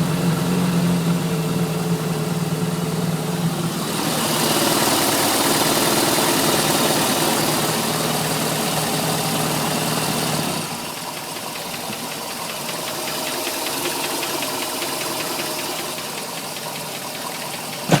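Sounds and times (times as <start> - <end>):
rapid even engine ticking: 0.0 - 18.0
boat engine running: 9.9 - 18.0.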